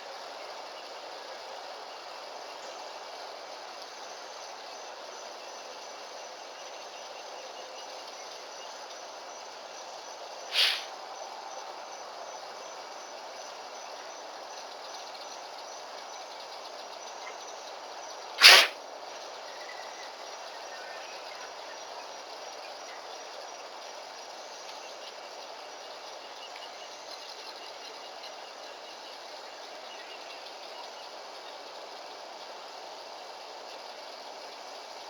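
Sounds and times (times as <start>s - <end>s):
insects chirping: 7.8s - 35.0s
animal sneezing: 10.5s - 10.9s, 18.4s - 18.8s.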